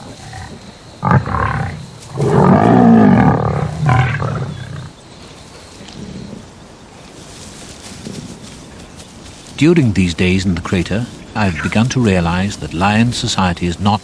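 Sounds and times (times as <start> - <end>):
lions growling: 0.0 - 5.0.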